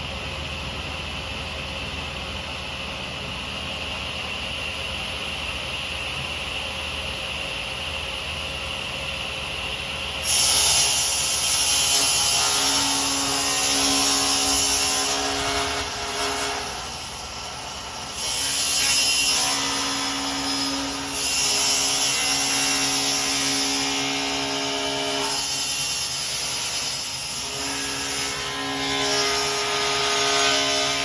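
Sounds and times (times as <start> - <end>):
table saw cutting panel: 10.2 - 31.0.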